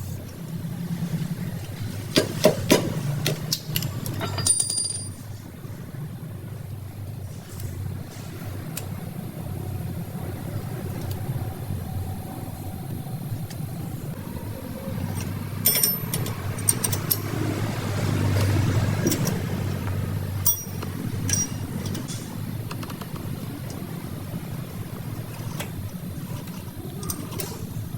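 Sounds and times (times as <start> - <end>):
motor vehicle rumble: 0.0 - 27.9
sharp metallic clinks: 15.6 - 17.4, 20.4 - 22.1.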